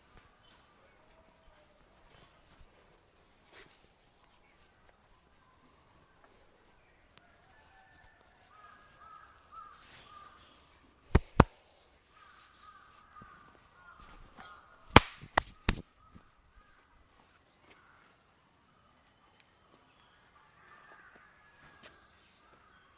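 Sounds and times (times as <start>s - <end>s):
crows cawing: 8.5s - 10.4s, 12.2s - 14.8s
sharp hand smacks: 11.1s - 11.5s, 14.9s - 15.8s.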